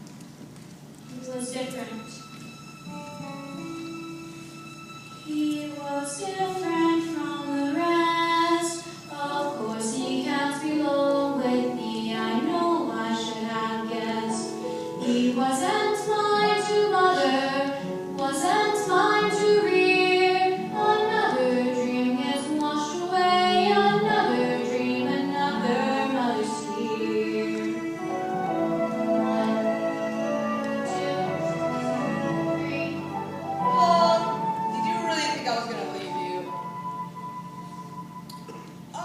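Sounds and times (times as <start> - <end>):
young voices singing: 5.3 - 33.1.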